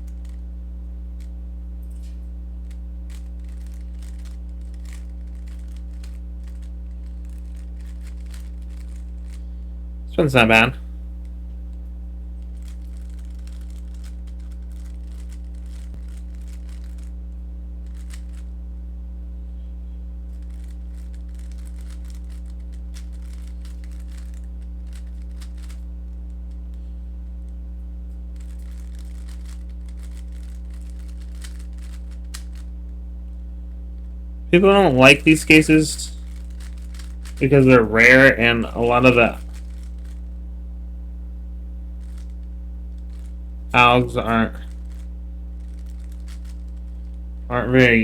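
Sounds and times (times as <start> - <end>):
electrical hum: 0.0 - 48.0
plastic puzzle cube clicking: 2.6 - 9.4, 12.6 - 17.1, 20.4 - 25.8, 28.4 - 32.7, 36.3 - 37.4, 42.0 - 42.3, 45.7 - 46.7.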